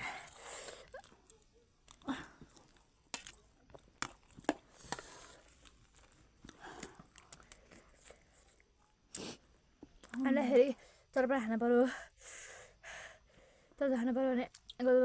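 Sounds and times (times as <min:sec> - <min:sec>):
crunchy snack being eaten: 0:00.9 - 0:08.6.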